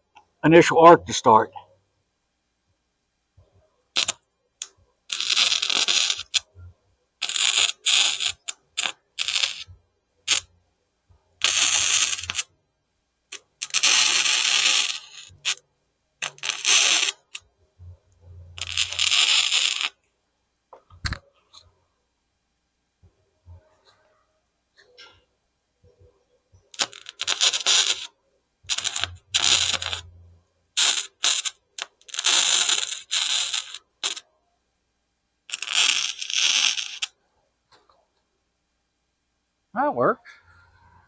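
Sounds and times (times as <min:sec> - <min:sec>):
welder arc crackling and sizzling: 0:04.0 - 0:06.5, 0:07.2 - 0:10.5, 0:11.4 - 0:12.5, 0:13.3 - 0:15.6, 0:16.2 - 0:17.5, 0:18.5 - 0:20.0, 0:26.7 - 0:30.1, 0:30.8 - 0:34.3, 0:35.5 - 0:37.2.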